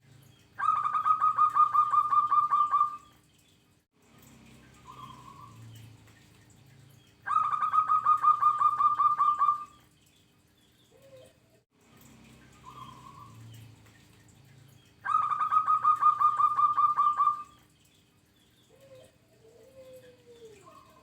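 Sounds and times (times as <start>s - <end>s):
dove cooing: 0.6s - 3.0s, 7.3s - 9.8s, 10.9s - 11.4s, 15.0s - 17.6s, 18.6s - 21.0s.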